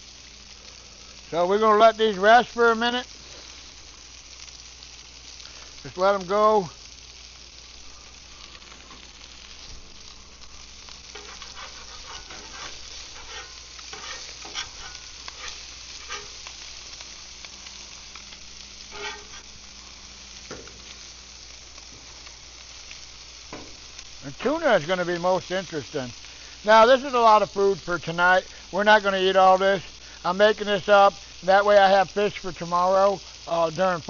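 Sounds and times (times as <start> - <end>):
fish fillets sizzling on a grill: 0.0 - 34.0
crackling and pops: 2.8 - 27.7.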